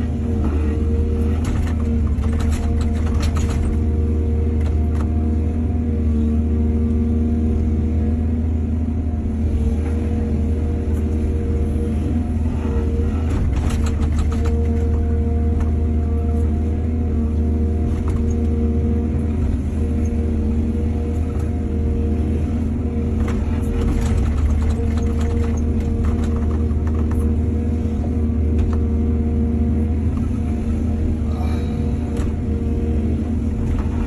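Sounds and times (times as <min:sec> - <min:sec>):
excavator diesel engine running: 0:00.0 - 0:34.0
knocks and clatter: 0:01.4 - 0:03.9, 0:13.2 - 0:15.1, 0:23.2 - 0:27.3.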